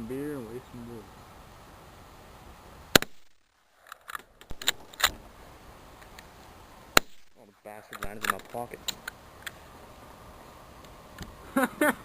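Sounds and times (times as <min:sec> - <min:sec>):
rifle shot: 0:02.9 - 0:03.4
sharp clicks and knocks: 0:07.0 - 0:09.6.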